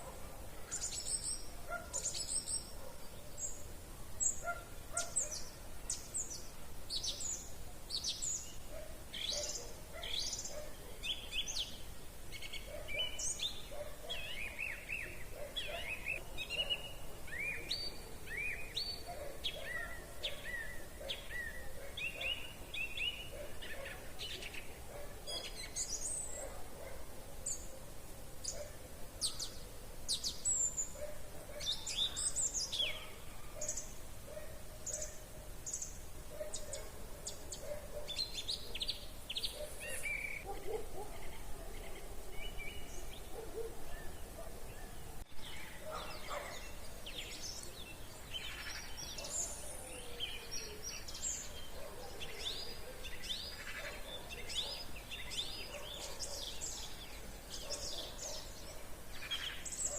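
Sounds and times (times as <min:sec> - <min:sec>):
songbirds chirping: 0:00.0 - 0:59.9.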